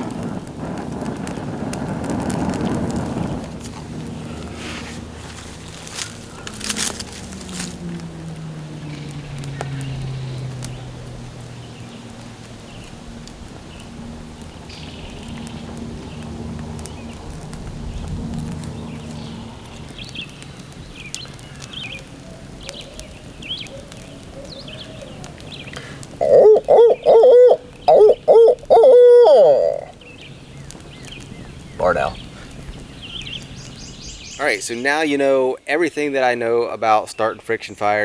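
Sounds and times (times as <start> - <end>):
low steady drone: 0.0 - 34.3
small birds chirping: 0.0 - 38.0
faint clicks: 5.1 - 26.2.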